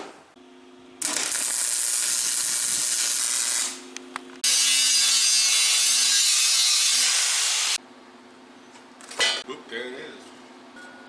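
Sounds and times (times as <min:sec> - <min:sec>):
arc welding hissing crackle: 0:01.0 - 0:07.8.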